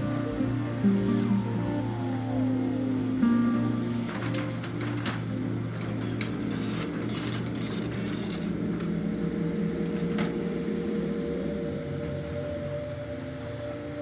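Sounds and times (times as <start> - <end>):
steady whine: 0.0 - 6.3.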